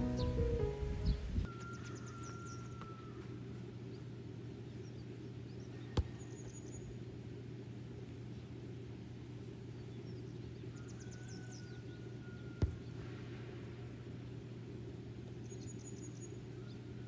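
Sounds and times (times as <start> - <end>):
faint bird chirps: 1.1 - 4.0, 9.7 - 13.2.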